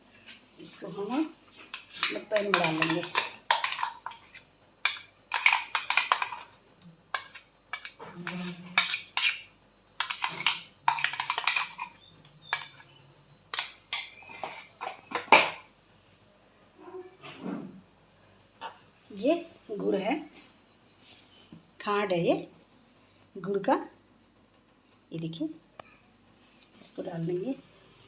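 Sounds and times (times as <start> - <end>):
spoon scraping container: 1.7 - 15.3.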